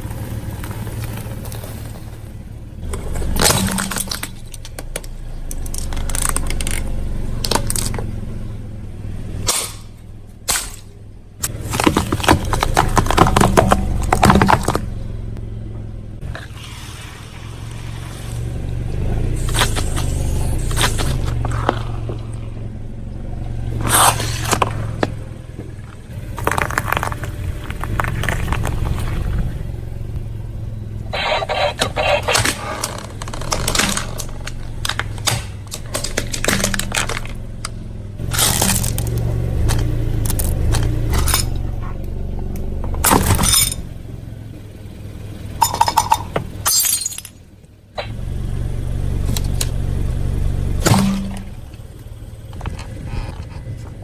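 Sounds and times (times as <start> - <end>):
car engine running: 0.0 - 54.0
tyres crushing brittle objects: 2.9 - 8.0, 10.5 - 15.0, 19.4 - 22.2, 25.8 - 29.4, 31.2 - 41.6.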